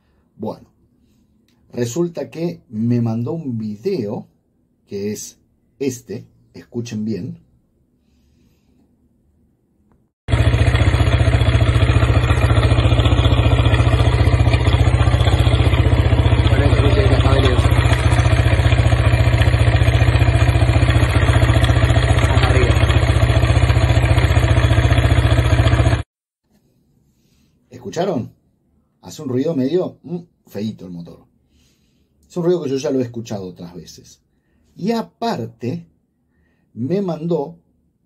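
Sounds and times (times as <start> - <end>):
rough motorcycle engine running: 10.3 - 26.1.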